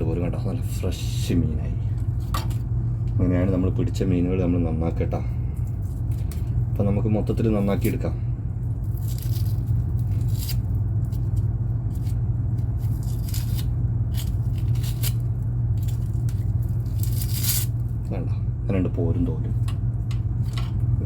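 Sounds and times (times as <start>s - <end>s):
steady low hum: 0.0s - 21.0s
knife scraping fish skin: 8.9s - 17.8s.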